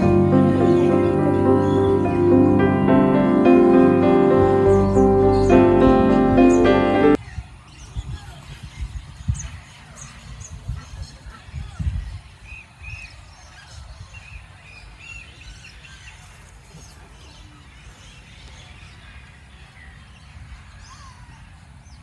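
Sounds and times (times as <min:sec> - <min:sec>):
birds chirping and calling: 0:00.0 - 0:14.5.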